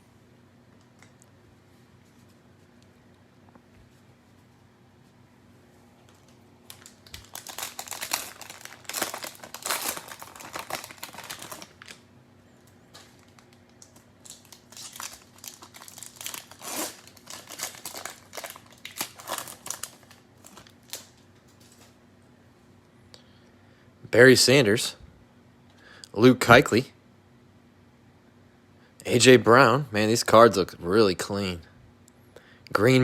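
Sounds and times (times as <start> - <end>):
cellophane crinkling and tearing: 6.1 - 12.0, 12.9 - 21.9.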